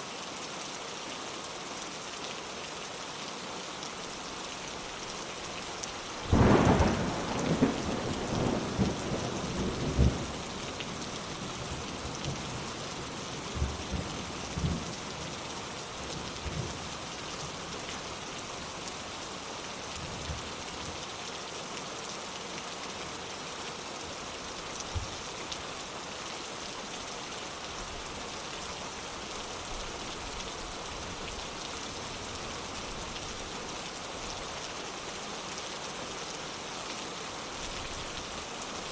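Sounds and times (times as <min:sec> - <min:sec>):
steady rain: 0:00.0 - 0:38.9
rumbles of thunder: 0:06.3 - 0:10.5.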